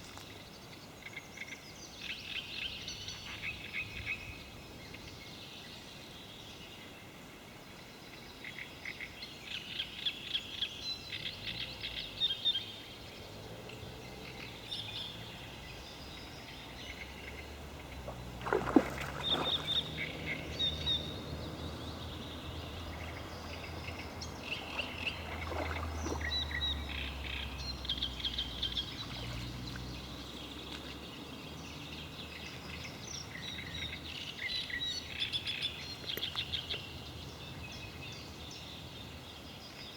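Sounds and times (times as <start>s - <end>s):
songbirds chirping and singing: 8.1s - 39.9s.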